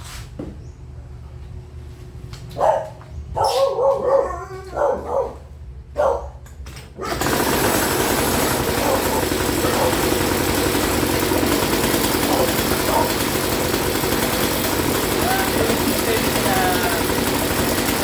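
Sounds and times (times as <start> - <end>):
short bark-like calls: 2.6 - 5.3
outboard motor running: 7.0 - 18.0.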